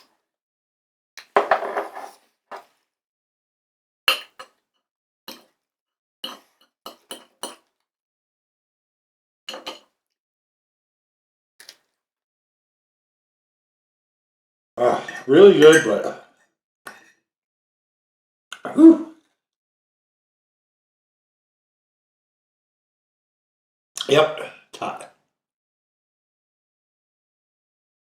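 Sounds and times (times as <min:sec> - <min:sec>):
fork and knife scraping a plate: 0:01.4 - 0:02.6.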